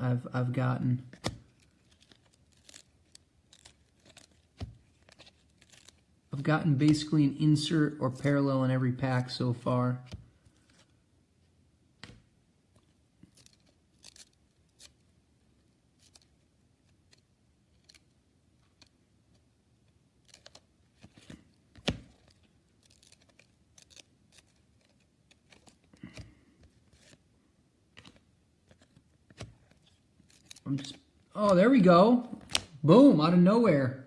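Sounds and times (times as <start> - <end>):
trading cards clicking and rustling: 1.0 - 6.0, 6.6 - 7.2, 16.0 - 27.2, 27.9 - 32.8.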